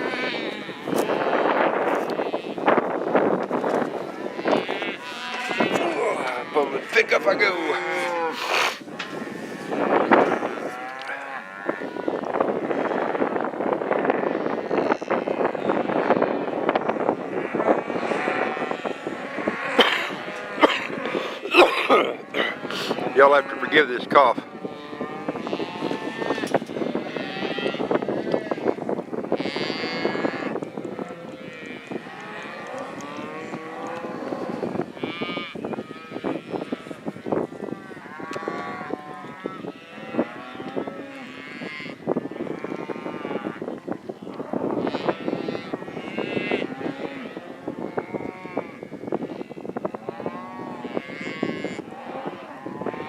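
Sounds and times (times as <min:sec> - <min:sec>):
cattle mooing: 0:00.0 - 0:02.8, 0:04.2 - 0:13.0, 0:14.0 - 0:16.7, 0:17.3 - 0:28.7, 0:29.3 - 0:49.3, 0:50.0 - 0:53.0
man coughing: 0:19.8 - 0:22.6.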